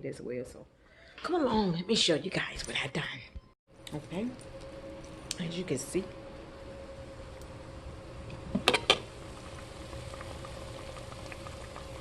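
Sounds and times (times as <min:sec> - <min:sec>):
faint steady hum: 0:03.2 - 0:12.0
pots simmering: 0:03.8 - 0:12.0.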